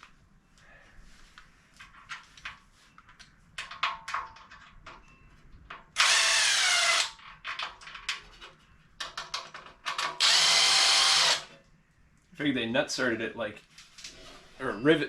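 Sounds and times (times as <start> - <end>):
power drill whine: 6.0 - 7.1, 10.2 - 11.5
tools clicking and knocking: 7.1 - 10.6.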